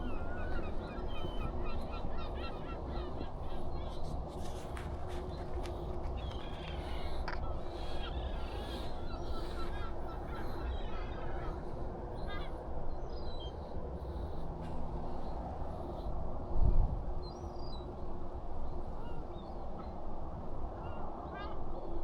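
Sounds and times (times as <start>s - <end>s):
birds calling: 0.0s - 11.6s.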